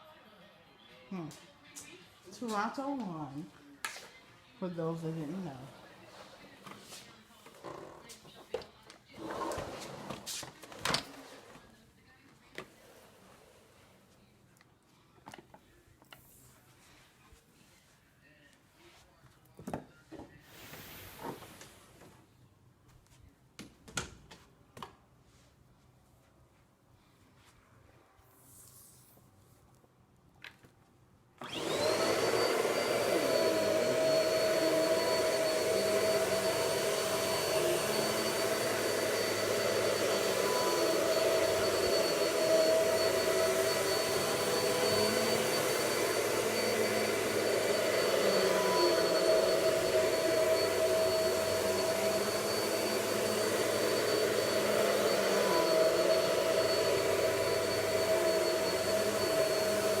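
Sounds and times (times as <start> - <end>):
vacuum cleaner motor running: 31.4 - 60.0.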